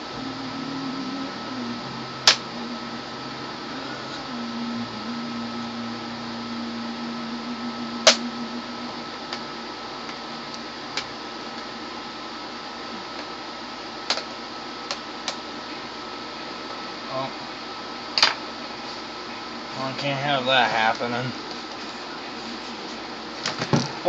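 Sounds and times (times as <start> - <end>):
steady background hum: 0.0 - 24.0.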